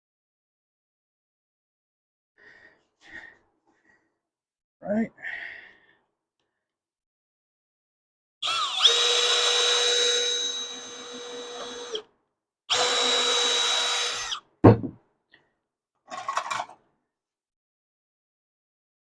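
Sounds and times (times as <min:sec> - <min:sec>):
cordless drill running: 0:08.4 - 0:12.1, 0:12.7 - 0:14.4
thump: 0:14.6 - 0:15.0.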